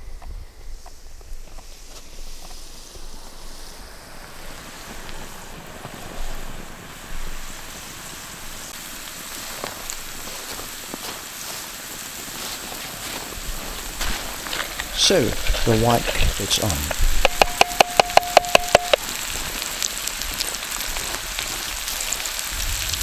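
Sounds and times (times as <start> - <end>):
food sizzling in a pan: 2.3 - 23.0
sharp clicks: 14.6 - 19.0.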